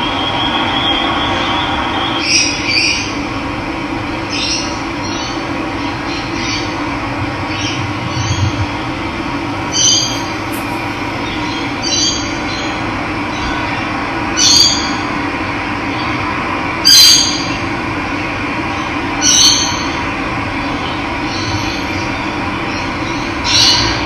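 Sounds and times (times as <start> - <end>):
bird high call: 9.6 - 12.0.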